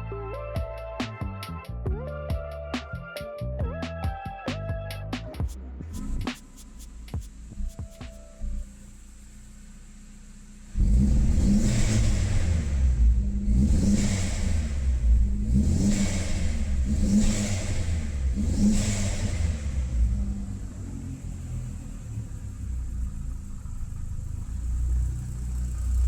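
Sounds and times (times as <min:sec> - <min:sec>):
car engine revving: 0:05.4 - 0:26.0.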